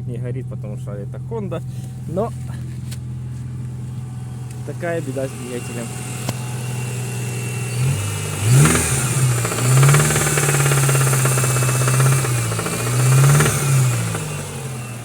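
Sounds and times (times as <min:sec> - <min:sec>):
car engine idling and revving: 0:00.0 - 0:15.0
engine knocking: 0:08.0 - 0:15.0.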